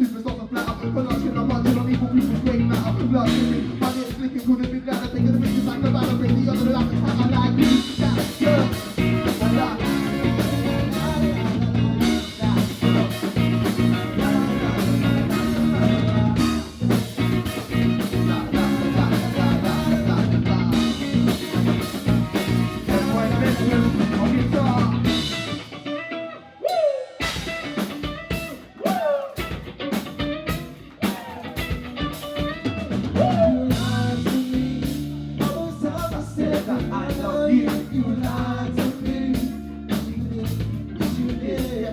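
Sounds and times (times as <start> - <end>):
live band playing: 0.0 - 41.9
sliding guitar notes: 7.8 - 26.6.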